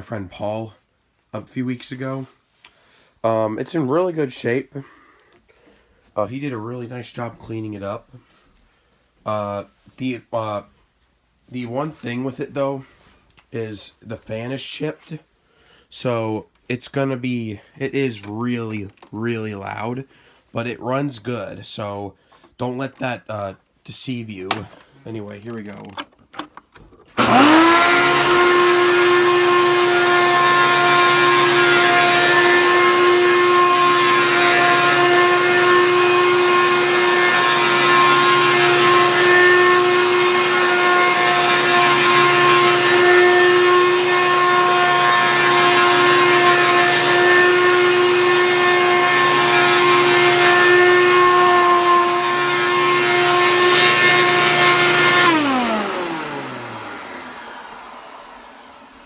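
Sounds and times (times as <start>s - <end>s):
vacuum cleaner motor whining: 27.2s - 59.0s.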